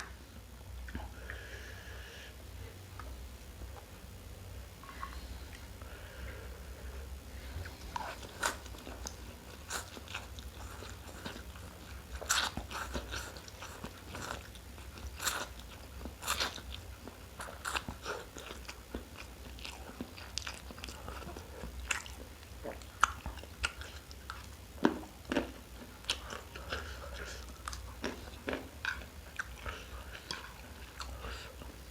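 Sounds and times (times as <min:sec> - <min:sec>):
person chewing and crunching: 0:07.5 - 0:31.9.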